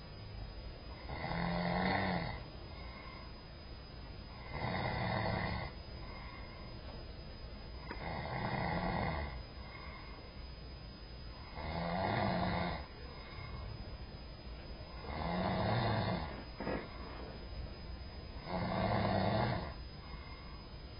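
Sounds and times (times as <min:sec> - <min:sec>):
person snoring: 0:01.0 - 0:03.2, 0:04.4 - 0:06.5, 0:07.9 - 0:10.2, 0:11.5 - 0:13.7, 0:15.0 - 0:17.3, 0:18.4 - 0:20.6.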